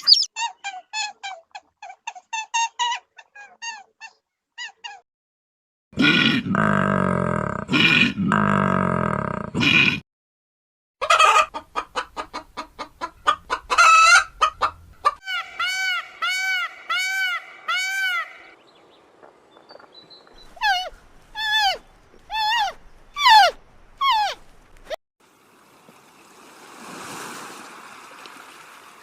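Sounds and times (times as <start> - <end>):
chickens clucking and calling: 11.0 - 18.6.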